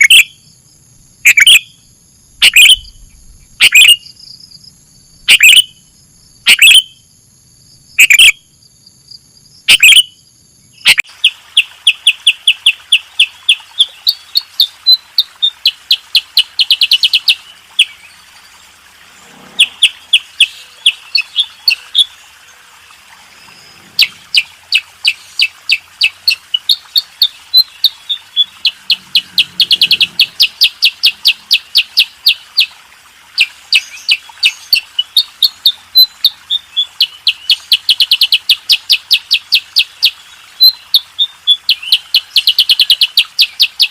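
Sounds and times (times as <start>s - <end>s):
bulbuls chirping: 2.4s - 5.8s, 19.5s - 32.7s.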